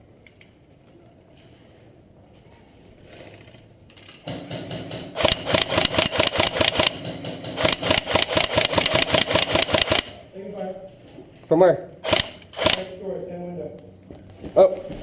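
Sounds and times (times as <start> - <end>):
airsoft gun full-auto burst: 5.1 - 10.2, 12.0 - 13.0
motor and gearbox whir: 5.2 - 6.9.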